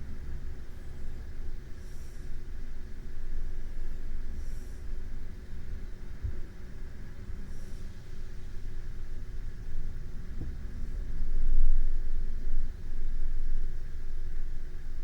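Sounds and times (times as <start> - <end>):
faint steady hum: 0.0 - 15.0
slow sleeping breathing: 0.6 - 2.8, 3.7 - 5.8, 7.2 - 8.3.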